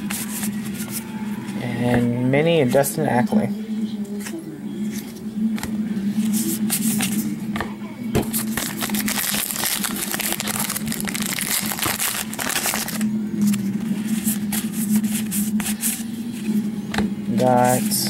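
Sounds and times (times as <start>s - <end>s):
cards clicking and rustling: 8.3s - 16.0s
wrapper crinkling and tearing: 8.4s - 13.6s.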